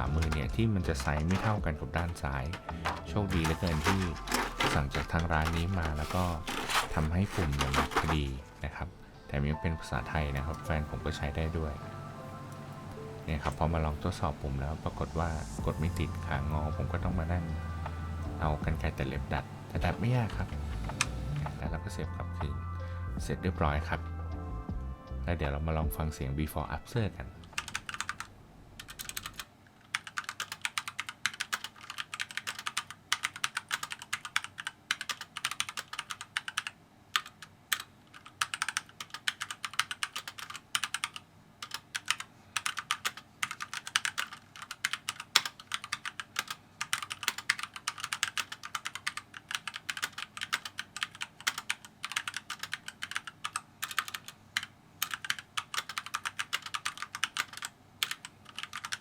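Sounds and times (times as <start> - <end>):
mechanical keyboard typing: 0.0 - 8.3, 18.4 - 21.6, 27.6 - 59.0.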